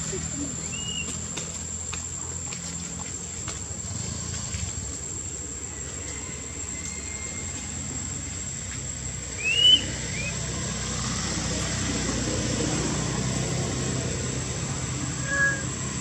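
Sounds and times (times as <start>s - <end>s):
steady high whine: 13.4s - 16.0s.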